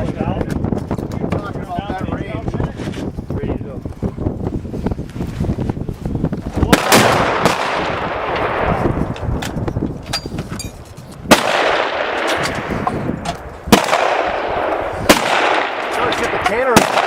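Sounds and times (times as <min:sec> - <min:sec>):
gunshots with rolling echo: 0:06.6 - 0:09.7, 0:11.2 - 0:17.0.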